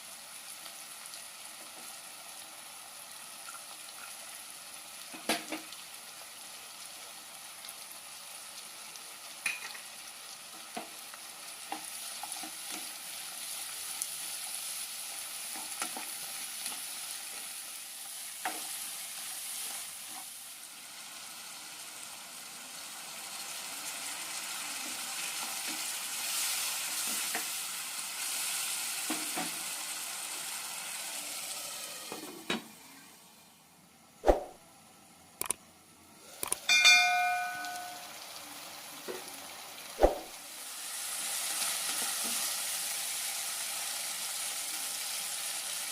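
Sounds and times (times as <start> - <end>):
food sizzling in a pan: 0.0 - 45.9
spoon clinking against pan: 36.7 - 38.2.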